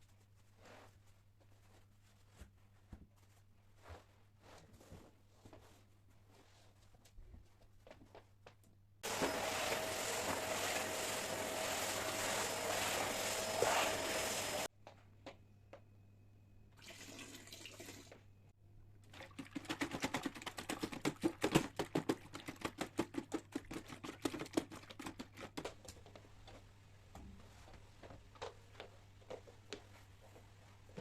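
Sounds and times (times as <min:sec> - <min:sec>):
rubbing or scrubbing strokes: 0:09.0 - 0:14.7
vacuum cleaner motor running: 0:09.0 - 0:14.7.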